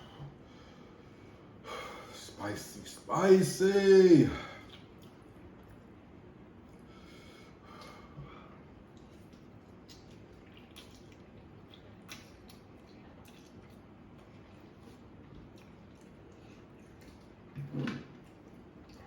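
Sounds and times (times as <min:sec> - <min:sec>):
low room hiss: 0:00.0 - 0:19.0
noodles being chewed: 0:04.6 - 0:06.9, 0:08.7 - 0:19.0.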